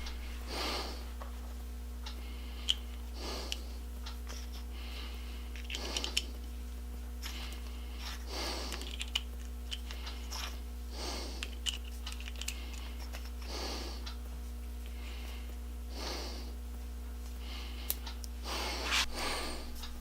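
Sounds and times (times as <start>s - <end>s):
person breathing through nose: 0.0s - 1.2s, 7.2s - 9.0s, 12.4s - 14.1s, 17.4s - 20.0s
low electrical hum: 0.0s - 20.0s.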